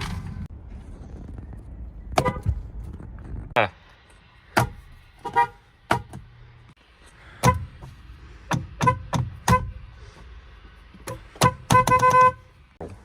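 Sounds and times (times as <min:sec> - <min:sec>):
car horn toots: 0:02.2 - 0:02.6, 0:05.2 - 0:05.6, 0:07.4 - 0:07.9, 0:08.7 - 0:09.8, 0:11.0 - 0:12.6.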